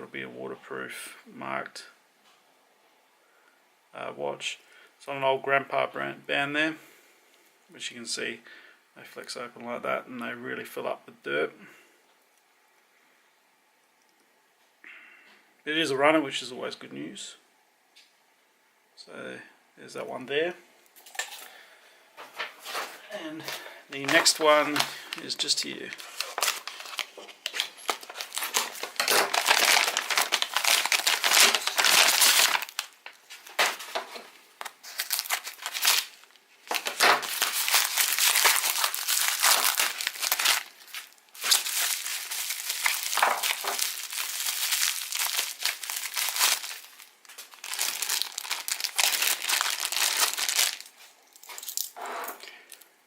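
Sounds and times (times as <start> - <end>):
packaging wrap crinkling: 22.3 - 52.0.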